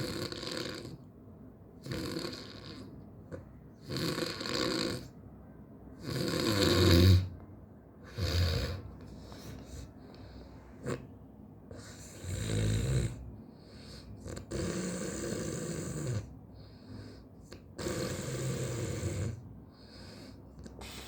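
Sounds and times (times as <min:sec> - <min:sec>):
heavy snoring: 0:00.0 - 0:01.1, 0:01.8 - 0:02.9, 0:03.8 - 0:05.1, 0:06.0 - 0:07.3, 0:08.0 - 0:09.0, 0:10.8 - 0:11.1, 0:11.7 - 0:16.3, 0:17.8 - 0:21.0.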